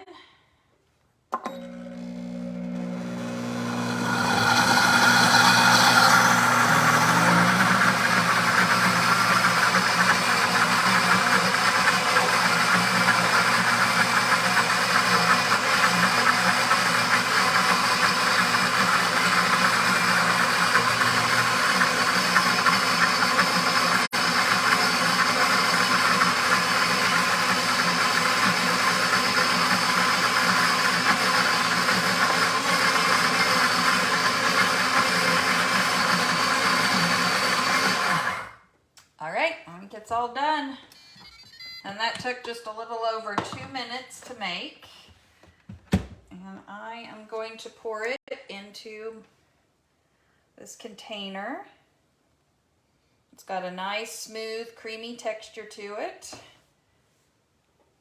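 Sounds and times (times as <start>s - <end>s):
blender motor grinding: 1.4s - 38.6s.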